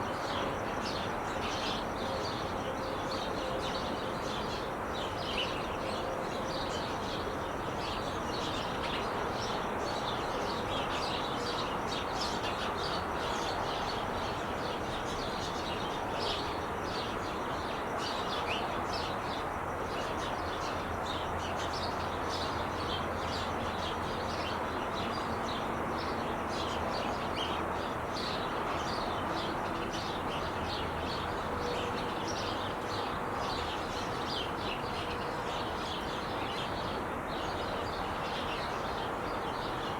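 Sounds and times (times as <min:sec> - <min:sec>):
freeway traffic roar: 0:15.7 - 0:39.9.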